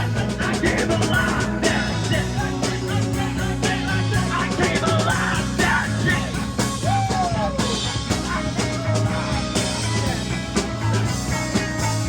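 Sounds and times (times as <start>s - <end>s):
bass guitar: 0.0s - 12.0s
drums: 0.0s - 12.0s
electric guitar: 0.0s - 12.0s
person singing: 0.0s - 12.0s.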